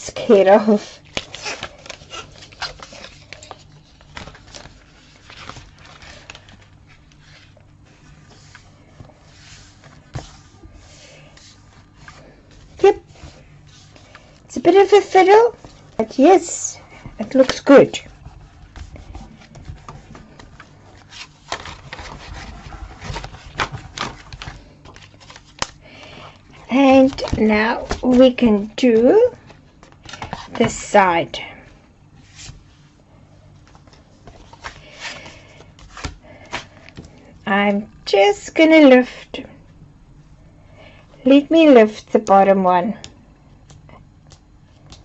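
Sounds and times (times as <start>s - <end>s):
paper rustling: 0.7s - 16.2s, 16.9s - 30.9s.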